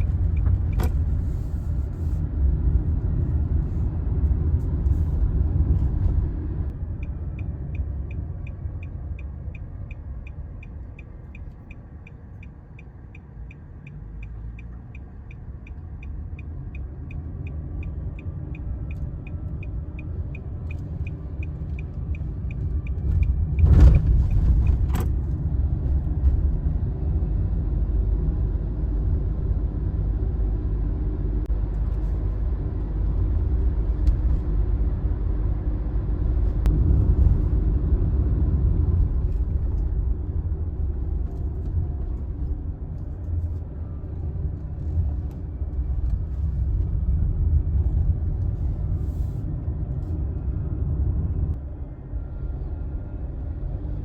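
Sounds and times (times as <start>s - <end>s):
turn signal ticking: 0.0s - 1.6s, 6.7s - 25.2s
road rumble inside moving car: 0.0s - 54.0s.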